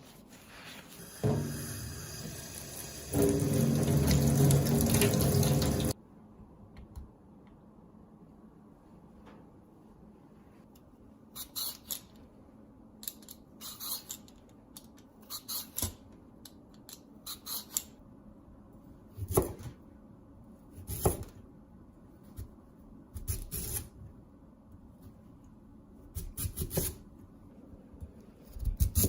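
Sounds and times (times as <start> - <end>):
scrapes and rustles: 0.0 - 1.1.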